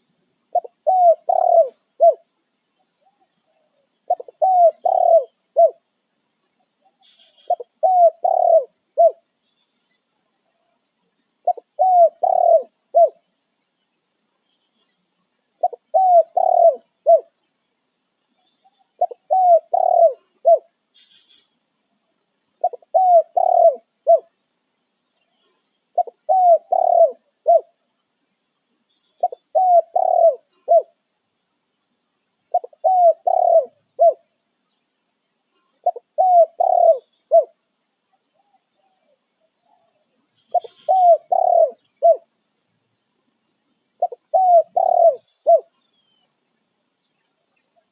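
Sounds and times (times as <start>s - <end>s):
dove cooing: 0.5s - 2.2s, 4.1s - 5.8s, 7.1s - 9.2s, 11.4s - 13.2s, 15.6s - 17.3s, 19.0s - 20.7s, 22.6s - 24.3s, 26.0s - 27.7s, 29.2s - 31.0s, 32.5s - 34.2s, 35.8s - 37.6s, 40.5s - 42.3s, 44.0s - 45.7s.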